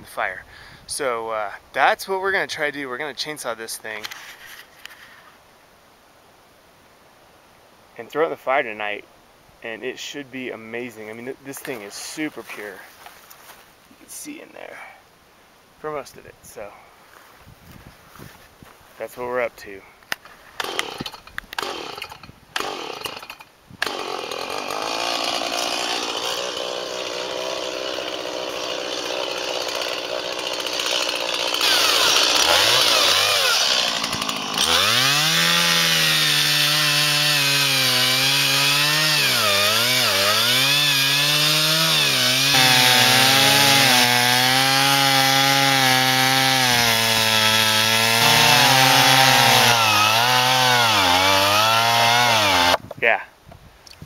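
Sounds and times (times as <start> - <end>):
chainsaw cutting wood: 20.6 - 52.8.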